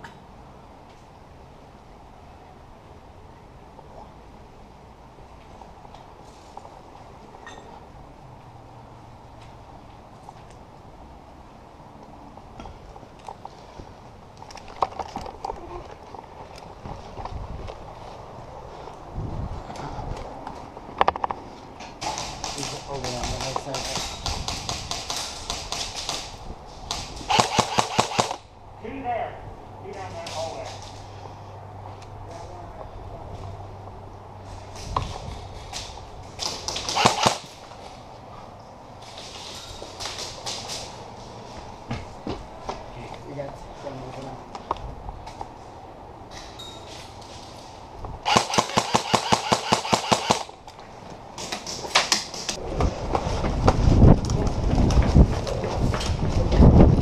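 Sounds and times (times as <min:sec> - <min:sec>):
airsoft guns firing: 0:22.0 - 0:28.4, 0:36.4 - 0:37.6, 0:48.2 - 0:50.6
airsoft rifle firing: 0:26.9 - 0:28.4, 0:36.7 - 0:37.6, 0:48.2 - 0:50.6.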